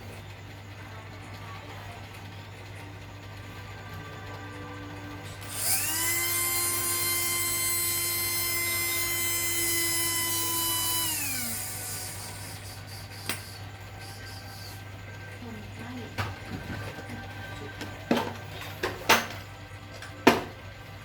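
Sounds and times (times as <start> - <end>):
electric drill whining: 5.3 - 14.8.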